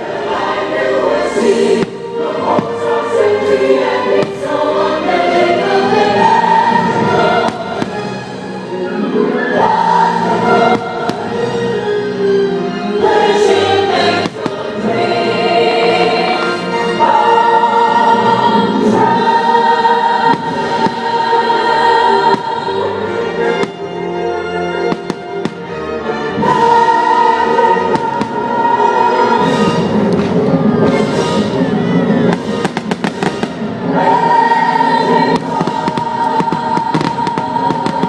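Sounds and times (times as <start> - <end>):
choir singing long held notes: 0.0 - 38.0
orchestral music: 0.0 - 38.0
fireworks bursts banging: 7.2 - 8.4, 10.6 - 11.6, 14.0 - 15.0, 20.2 - 21.4, 22.2 - 22.8, 23.5 - 23.9, 24.9 - 25.8, 27.9 - 28.6, 32.3 - 33.8, 35.2 - 38.0.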